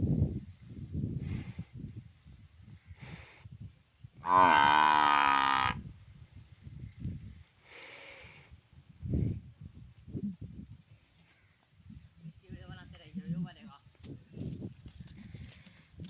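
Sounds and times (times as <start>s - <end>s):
cow mooing: 4.2s - 5.8s.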